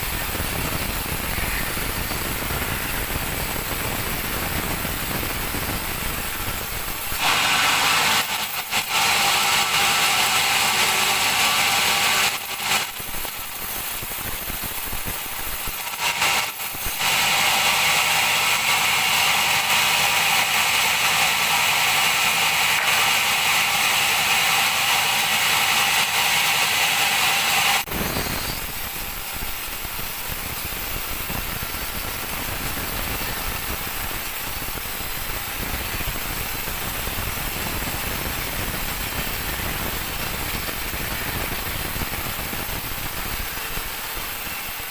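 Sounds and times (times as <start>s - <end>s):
machine running roughly: 0.0s - 44.9s
bandsaw cutting wood: 7.0s - 13.6s, 15.7s - 28.6s.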